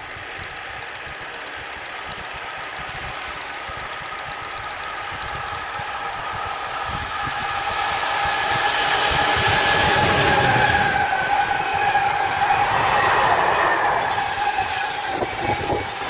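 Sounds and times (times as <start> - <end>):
train approaching: 0.0 - 16.0
high whine: 10.8 - 16.0.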